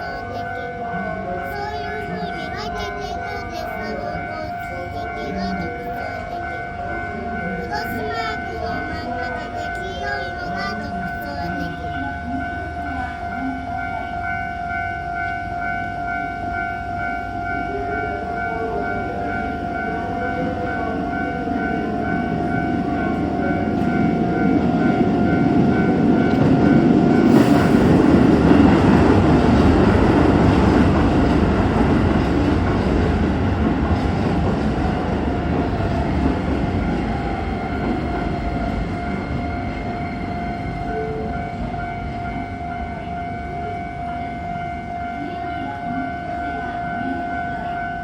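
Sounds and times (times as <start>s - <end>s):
level crossing bell clanging: 0.0s - 27.6s
train rumbling past: 0.0s - 48.0s.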